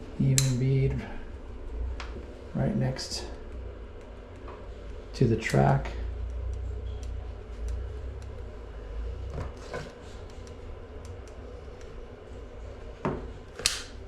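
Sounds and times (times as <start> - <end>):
low rumble: 0.0 - 13.5.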